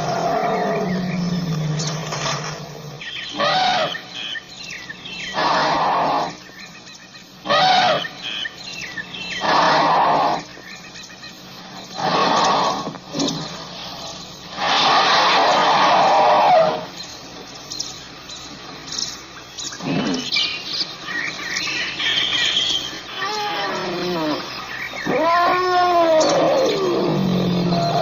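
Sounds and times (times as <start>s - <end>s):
elephant low rumble: 0.0s - 6.8s, 22.9s - 28.0s.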